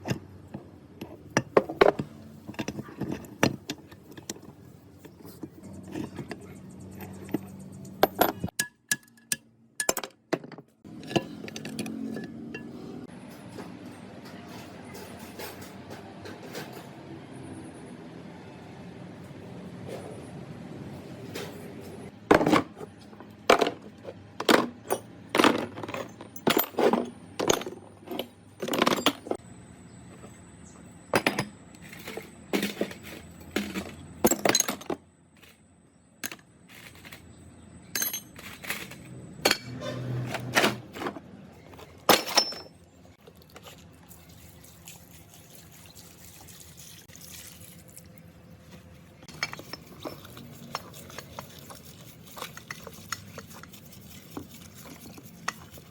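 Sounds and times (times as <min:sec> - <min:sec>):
metal parts clinking and knocking: 0:01.0 - 0:12.8, 0:23.5 - 0:29.4, 0:31.1 - 0:35.6, 0:36.2 - 0:39.8, 0:41.8 - 0:42.9, 0:49.3 - 0:51.0.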